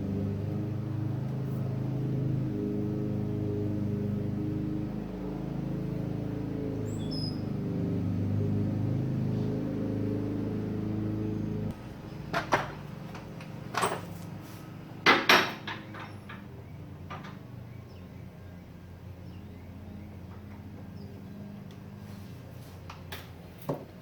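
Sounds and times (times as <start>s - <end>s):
steady hum: 0.0s - 13.7s
hand tools clanking: 15.1s - 16.5s.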